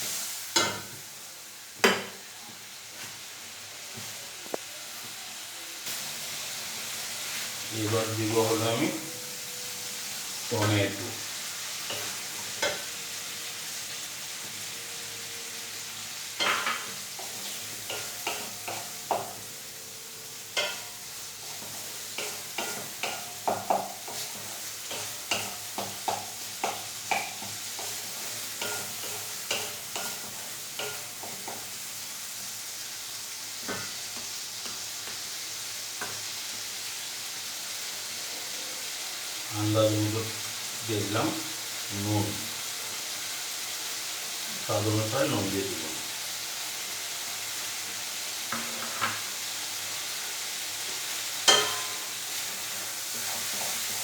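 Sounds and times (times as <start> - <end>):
food sizzling in oil: 0.0 - 54.0
spatula scraping a pan: 20.6 - 31.8, 50.9 - 54.0.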